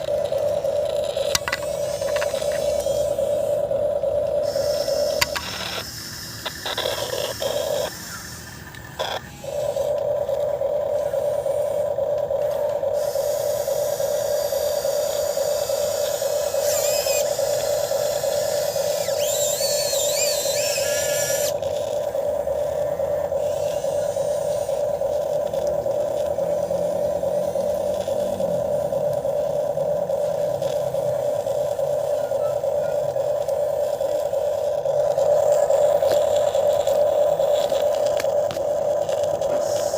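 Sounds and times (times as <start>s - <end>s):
electric motors whining: 0.0s - 39.9s
wavering high squeals: 1.4s - 9.9s, 12.9s - 21.6s.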